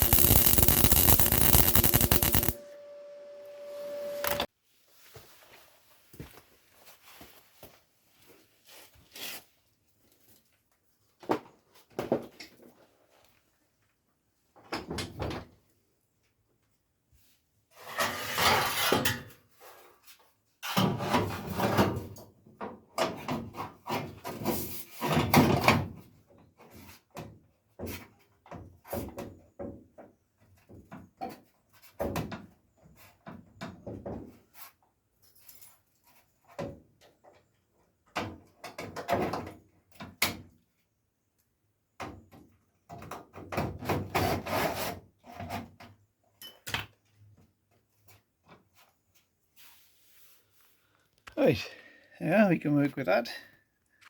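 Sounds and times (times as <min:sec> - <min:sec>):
scraping and rattling: 0:00.0 - 0:02.6.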